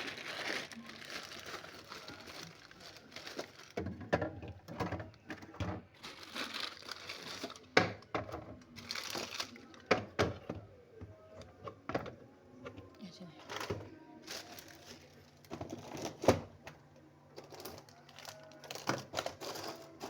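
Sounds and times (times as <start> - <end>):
plastic packets crinkling: 0.0 - 4.2, 5.9 - 8.0, 8.7 - 9.9, 13.6 - 16.2, 17.4 - 20.0.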